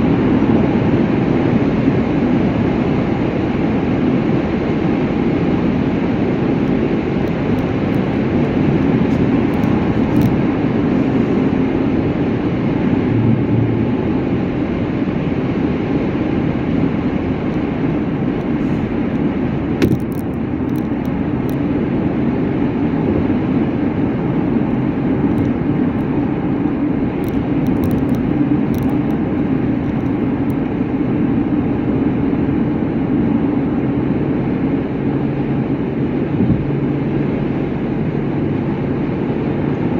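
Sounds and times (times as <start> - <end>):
vehicle road and engine noise: 0.0 - 39.9.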